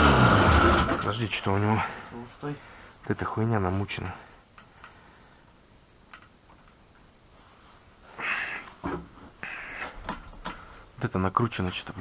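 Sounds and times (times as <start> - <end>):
short breathy sniff: 8.1 - 8.8, 9.4 - 10.0.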